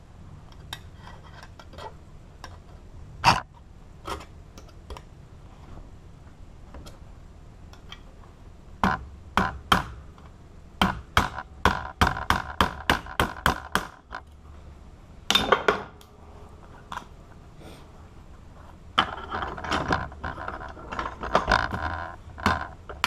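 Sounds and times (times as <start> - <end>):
sharp metallic knocks: 10.8 - 14.2.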